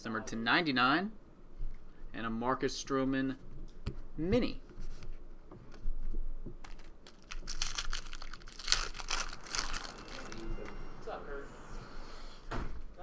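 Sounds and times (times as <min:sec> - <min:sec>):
foil wrapper crinkling and tearing: 0:06.6 - 0:10.7.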